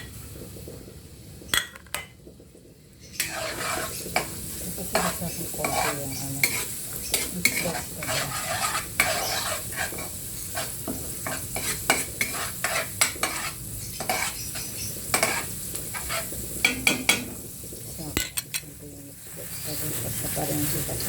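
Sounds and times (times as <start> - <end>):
vegetables sizzling in frying pan: 0.0 - 21.0
utensil scraping pan: 3.1 - 17.4.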